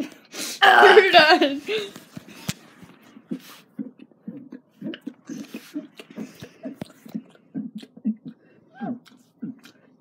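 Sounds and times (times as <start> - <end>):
mouth clicks: 2.4 - 10.0.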